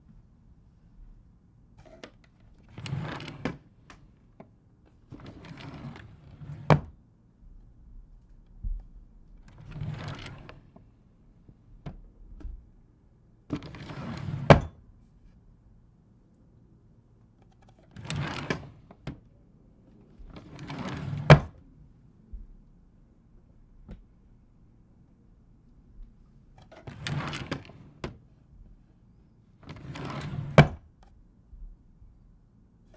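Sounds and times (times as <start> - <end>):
drawer sliding: 2.6 - 3.6, 5.1 - 6.9, 9.5 - 10.7, 13.5 - 14.8, 17.5 - 19.2, 20.2 - 21.6, 26.6 - 28.3, 29.6 - 30.9.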